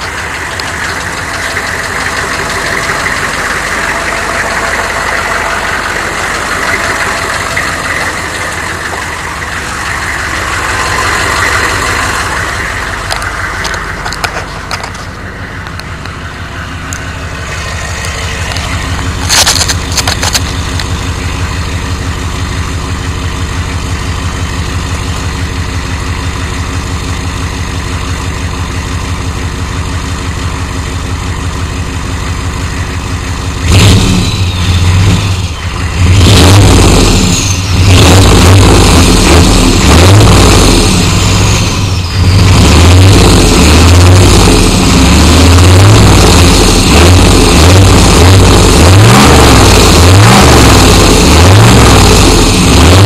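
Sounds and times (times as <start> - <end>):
engine revving hard: 0.0 - 14.2, 33.6 - 53.0
diesel engine idling: 0.0 - 53.0.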